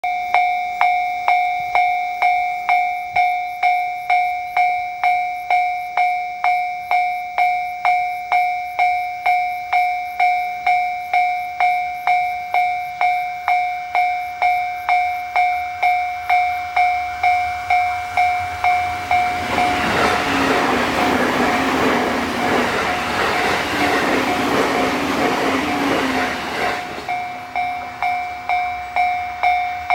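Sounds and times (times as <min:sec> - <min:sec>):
level crossing warning bell: 0:00.0 - 0:29.9
train passing: 0:15.3 - 0:29.9.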